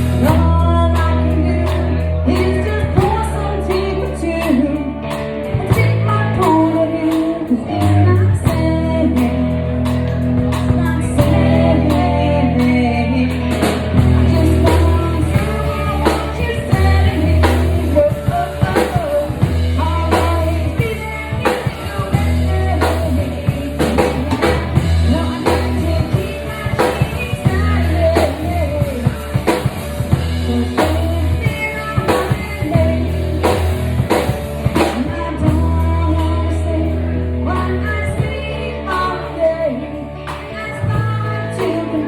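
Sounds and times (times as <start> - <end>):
bass guitar: 0.0 - 42.0
electric guitar: 0.0 - 42.0
person singing lead vocal: 0.0 - 42.0
drum kit beat: 4.4 - 38.5.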